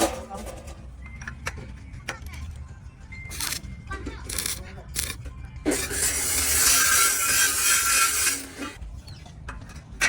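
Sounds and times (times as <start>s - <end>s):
power tool cutting: 5.8s - 8.8s.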